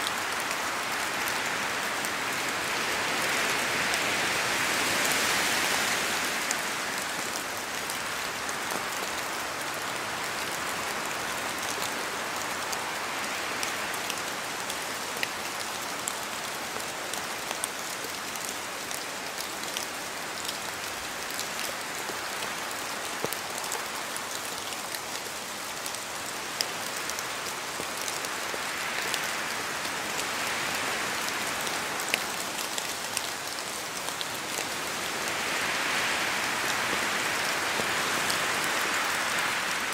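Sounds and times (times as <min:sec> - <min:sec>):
wind through trees: 0:00.0 - 0:39.9
rain hissing: 0:26.5 - 0:39.9.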